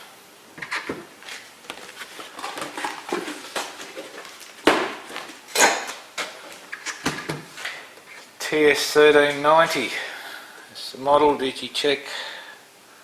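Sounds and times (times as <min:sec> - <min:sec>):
packaging rustling and clicking: 0:01.2 - 0:07.8.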